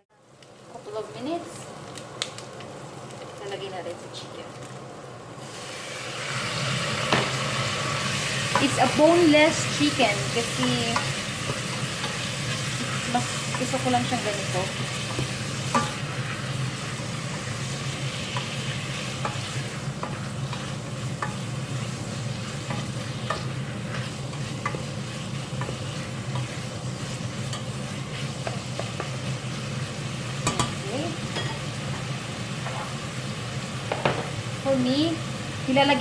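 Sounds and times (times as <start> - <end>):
chicken sizzling in a pan: 0.1 - 36.0.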